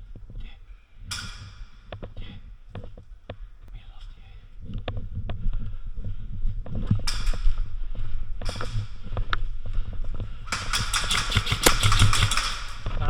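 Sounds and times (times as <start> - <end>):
scuffing movement and gear rustle: 0.0 - 10.8
steady low rumble: 0.0 - 13.0
rapid sharp clicks: 10.4 - 13.0.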